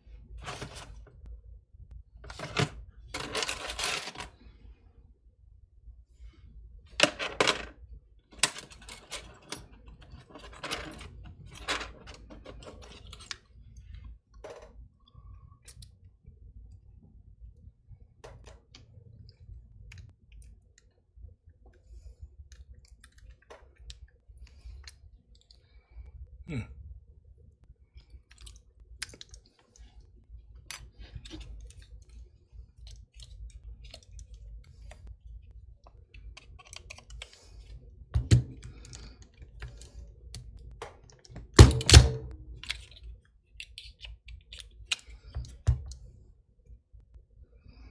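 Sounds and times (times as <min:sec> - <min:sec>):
tool clicking on padlock: 0:41.6 - 0:42.8.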